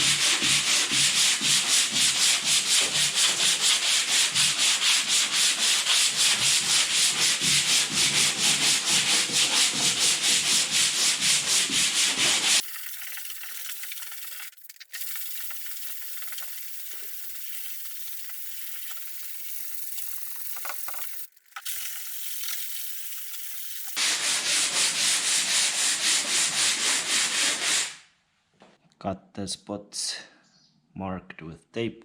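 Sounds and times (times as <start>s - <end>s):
sandpaper rasping on body filler: 0.0s - 28.0s.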